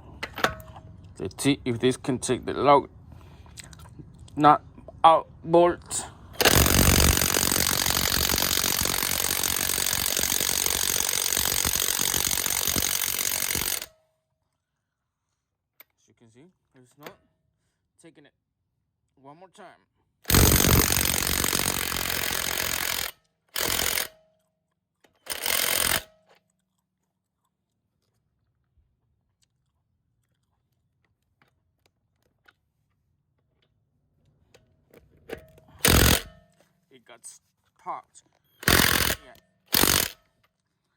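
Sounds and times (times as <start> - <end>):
impact wrench hammering: 6.4 - 13.9, 20.3 - 24.2, 25.3 - 26.1, 35.3 - 36.4, 38.6 - 40.2.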